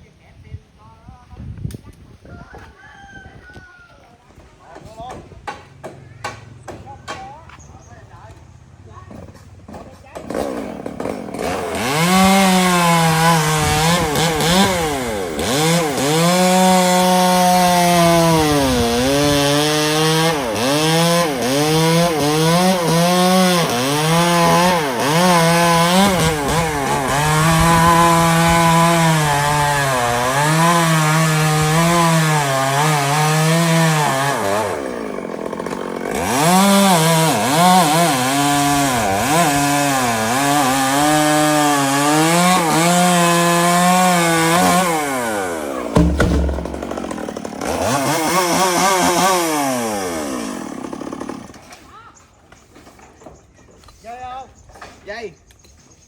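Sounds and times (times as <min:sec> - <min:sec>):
chainsaw cutting wood: 0:09.8 - 0:51.8.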